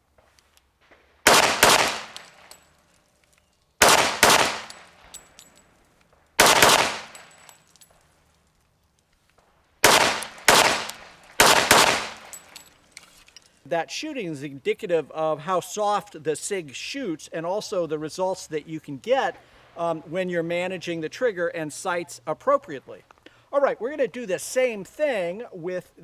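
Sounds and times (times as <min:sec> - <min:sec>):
pistol shots: 0:01.2 - 0:02.6, 0:03.8 - 0:05.2, 0:06.4 - 0:07.5, 0:09.8 - 0:12.6.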